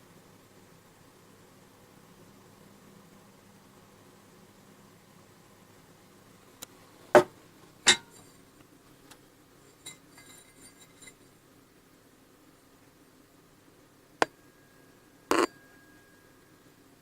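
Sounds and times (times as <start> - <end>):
light metallic clinks: 9.7 - 11.2
high metallic ring: 9.8 - 11.2, 14.3 - 17.0.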